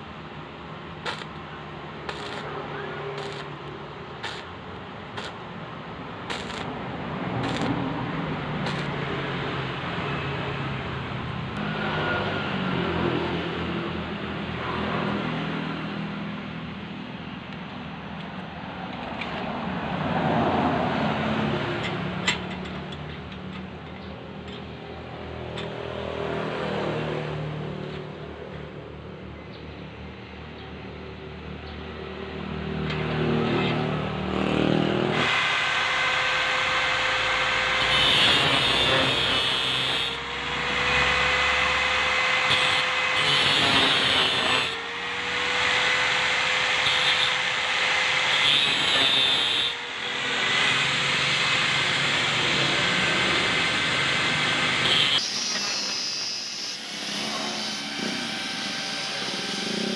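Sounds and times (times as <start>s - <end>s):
power tool motor running: 1.0s - 1.4s, 2.0s - 5.5s, 6.2s - 9.7s, 34.3s - 59.9s.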